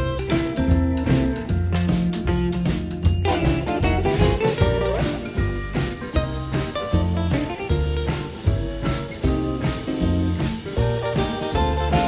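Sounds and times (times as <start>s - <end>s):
upbeat tune with bass line: 0.0s - 12.0s
jingle bells shaking: 7.3s - 12.0s.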